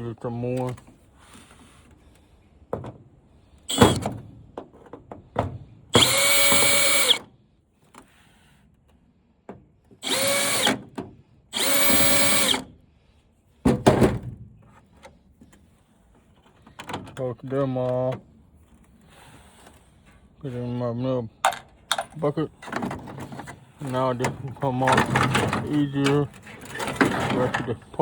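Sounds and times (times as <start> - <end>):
electric drill-driver spinning: 3.7 - 4.0, 6.0 - 7.2, 10.0 - 10.7, 11.6 - 12.6
handling knocks and clicks: 21.4 - 23.6.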